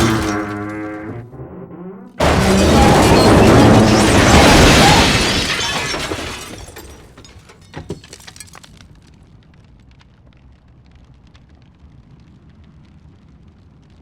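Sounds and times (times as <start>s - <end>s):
falling debris clinks and rattles: 0.0s - 0.8s, 2.2s - 9.2s
loud crash of things smashing: 0.0s - 1.0s, 2.2s - 8.8s.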